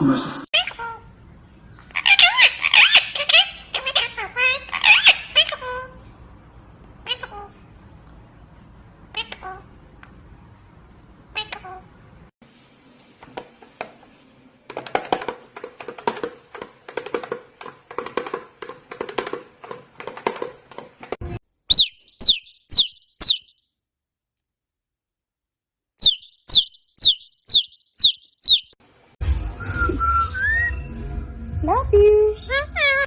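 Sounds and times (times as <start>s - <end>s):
small bird chirping: 21.7s - 23.6s, 26.0s - 28.8s.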